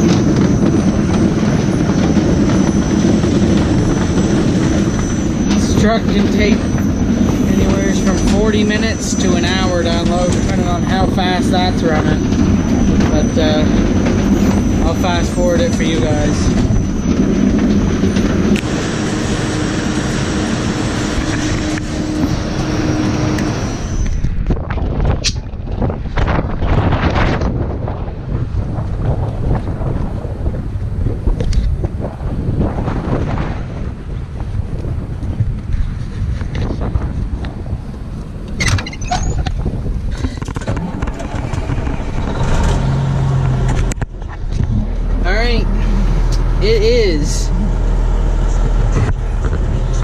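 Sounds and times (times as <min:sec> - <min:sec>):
gusty wind on microphone: 0:00.0 - 0:50.0
machinery rumbling and clattering: 0:00.0 - 0:50.0
steady hum: 0:00.0 - 0:50.0.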